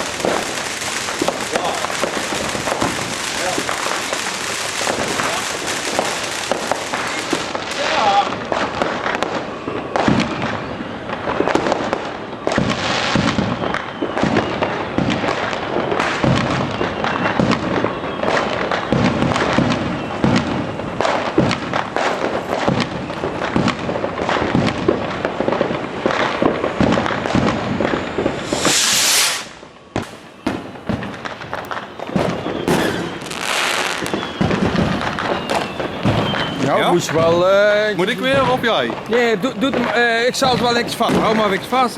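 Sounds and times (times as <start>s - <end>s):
fireworks cracking and banging: 0.0s - 41.9s
loud hissing rushes: 28.3s - 29.6s.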